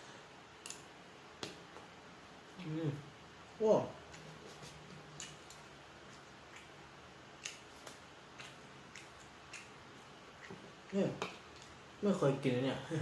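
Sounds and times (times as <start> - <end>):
person humming: 2.6 - 3.0
chewing crispy food: 7.4 - 11.8.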